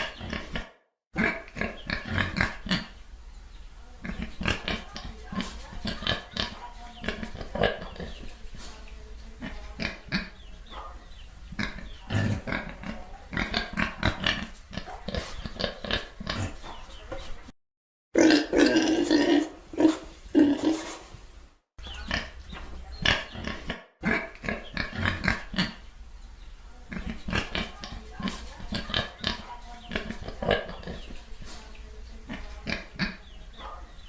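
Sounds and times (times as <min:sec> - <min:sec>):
pigs grunting and oinking: 0:00.0 - 0:03.0, 0:04.0 - 0:08.3, 0:09.4 - 0:10.4, 0:11.5 - 0:16.9, 0:18.2 - 0:21.0, 0:21.8 - 0:25.8, 0:26.9 - 0:31.2, 0:32.2 - 0:33.4.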